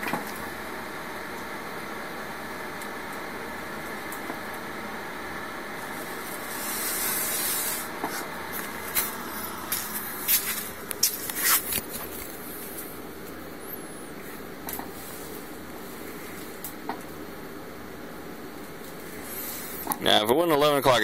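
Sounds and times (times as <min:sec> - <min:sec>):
electric drive motors running: 0:00.0 - 0:20.4
tire scrub hissing: 0:05.8 - 0:11.8.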